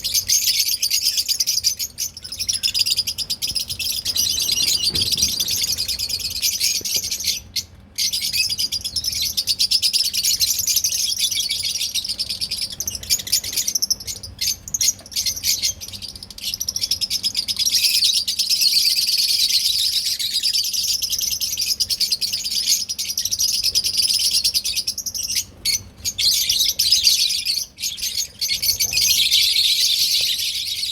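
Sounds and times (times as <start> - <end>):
parrots chirping and twittering: 0.0 - 30.9.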